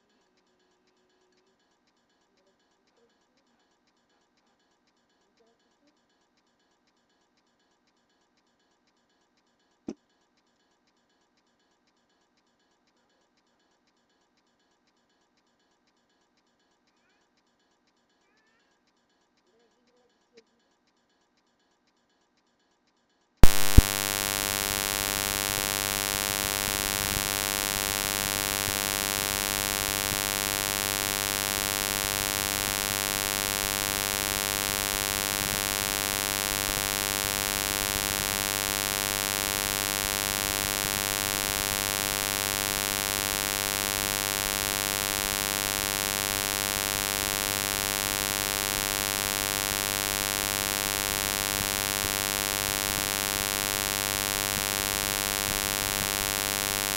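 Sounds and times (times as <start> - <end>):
electrical mains hum: 23.4 - 56.9.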